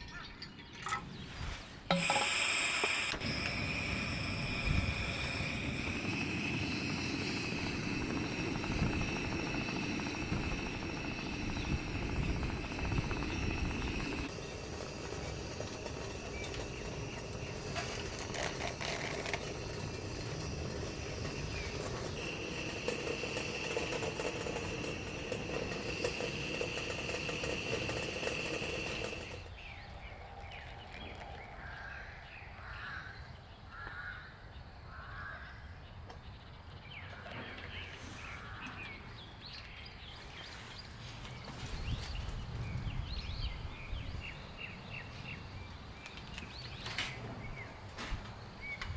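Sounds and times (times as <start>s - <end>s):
high whine: 1.9s - 29.4s.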